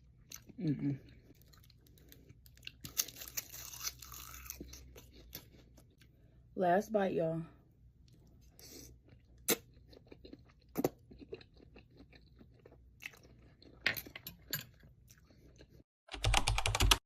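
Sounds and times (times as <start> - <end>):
chewing with wet mouth smacks: 8.0 - 13.8
rapid typing clicks: 16.1 - 17.0.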